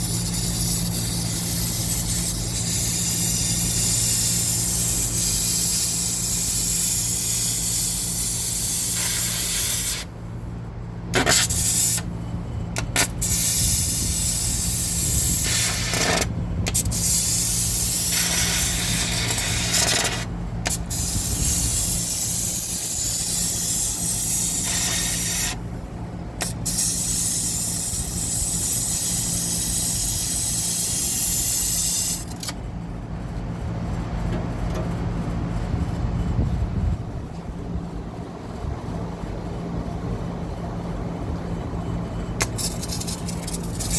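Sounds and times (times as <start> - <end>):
gas hissing under pressure: 0.0 - 10.2, 11.1 - 12.1, 12.7 - 25.6, 26.4 - 32.6, 42.4 - 43.9
steady low hum: 0.0 - 43.9.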